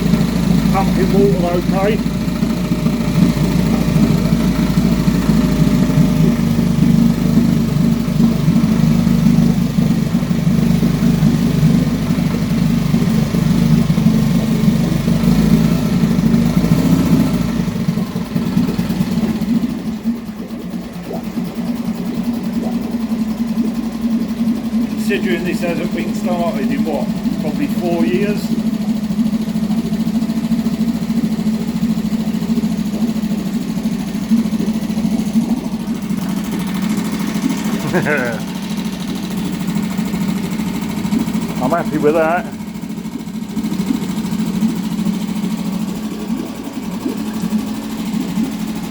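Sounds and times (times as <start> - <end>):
outboard motor running: 0.0 - 48.9.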